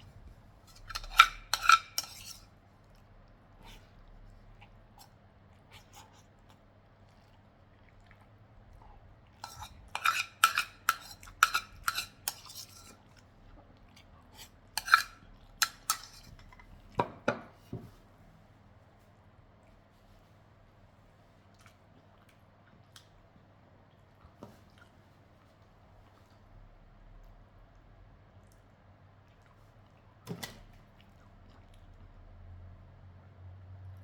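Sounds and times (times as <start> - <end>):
cutlery clinking on plate: 9.4 - 12.8, 14.8 - 16.3.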